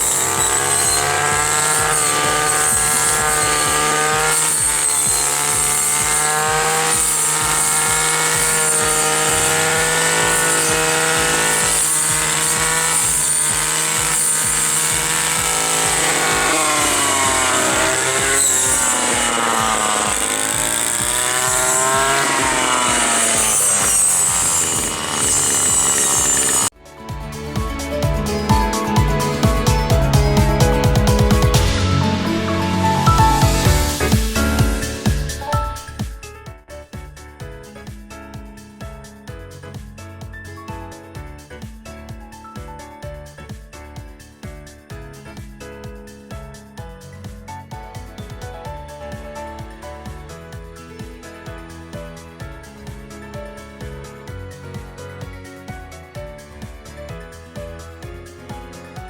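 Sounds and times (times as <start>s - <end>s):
brush cutter engine running: 0.0s - 26.7s, 27.8s - 35.4s.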